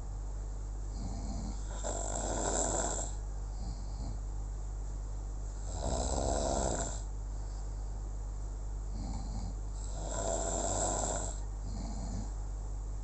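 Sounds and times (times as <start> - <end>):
snoring: 0.9 - 4.2, 5.6 - 7.1, 8.9 - 12.4.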